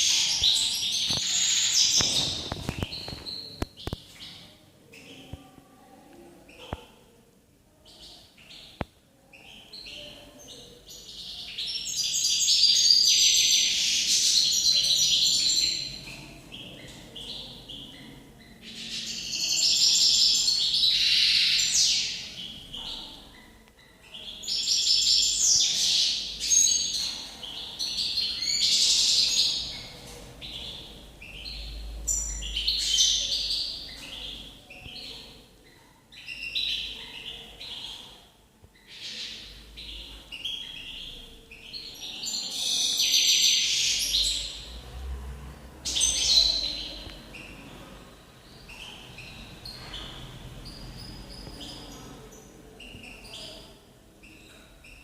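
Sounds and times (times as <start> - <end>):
finch twittering song: 0.0 - 5.2.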